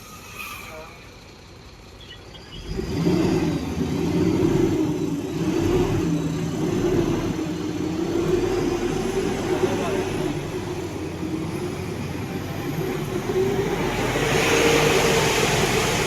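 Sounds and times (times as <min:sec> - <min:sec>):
heavy diesel engine revving: 0:02.5 - 0:16.0.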